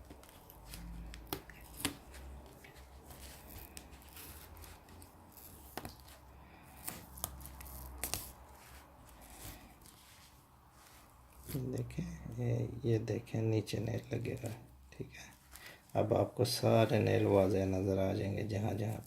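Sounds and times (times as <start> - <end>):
tape peeling: 0.0 - 11.9.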